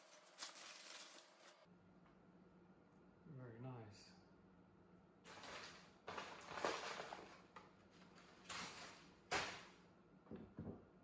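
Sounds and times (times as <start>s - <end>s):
packing material rustling and scraping: 0.0s - 1.7s, 5.3s - 9.5s.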